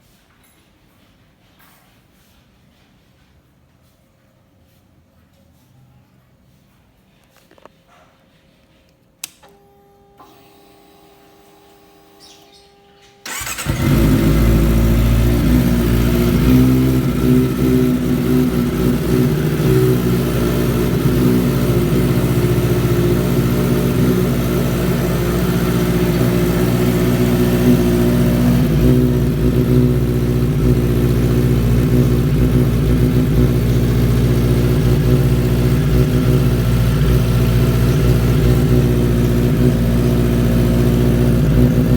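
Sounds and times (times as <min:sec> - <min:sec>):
motorcycle engine starting and idling: 0:12.2 - 0:41.9.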